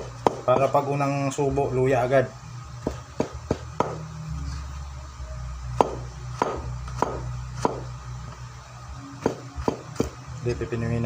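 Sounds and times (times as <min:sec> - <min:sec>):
knife chopping on cutting board: 0:00.0 - 0:00.8, 0:05.8 - 0:07.9, 0:09.2 - 0:10.2
low steady hum: 0:00.0 - 0:11.0.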